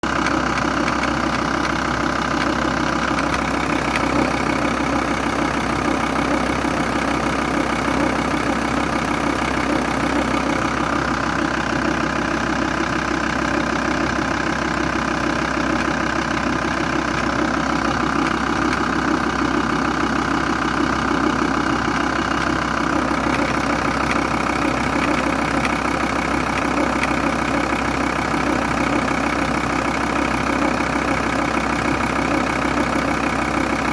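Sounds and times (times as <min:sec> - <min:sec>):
diesel engine idling: 0:00.0 - 0:33.9
rapid engine ticking: 0:00.0 - 0:33.9.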